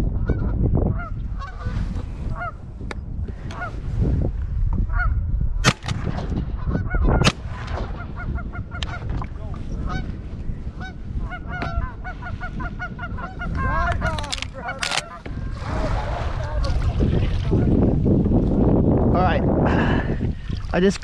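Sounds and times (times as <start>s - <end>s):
shotgun shots: 5.6s - 6.5s, 7.2s - 8.1s
geese honking: 10.8s - 15.3s.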